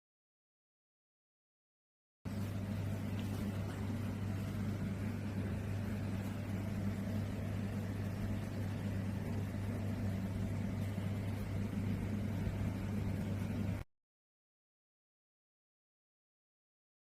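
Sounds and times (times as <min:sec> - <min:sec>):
low hum: 0:02.3 - 0:13.8.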